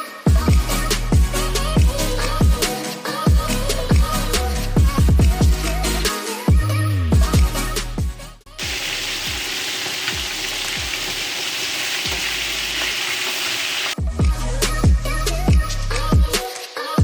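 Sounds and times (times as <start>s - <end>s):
chicken sizzling in hot oil: 8.6s - 14.0s.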